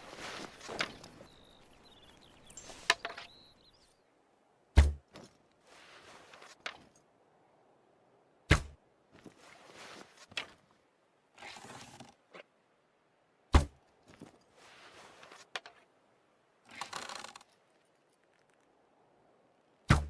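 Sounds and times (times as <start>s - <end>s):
arrows and bow rustling: 0.0s - 3.4s, 4.8s - 7.0s, 8.5s - 10.8s, 11.4s - 12.5s, 13.5s - 15.9s, 16.7s - 18.6s.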